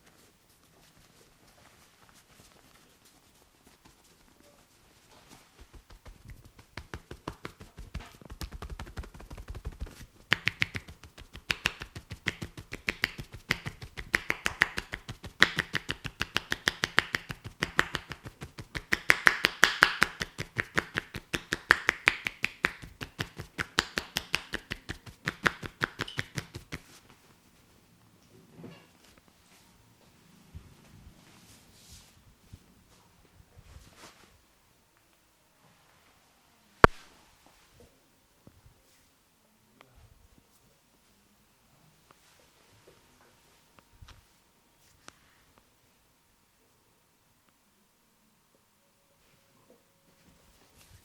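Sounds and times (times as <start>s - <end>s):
hands tapping on a head: 5.6s - 27.2s.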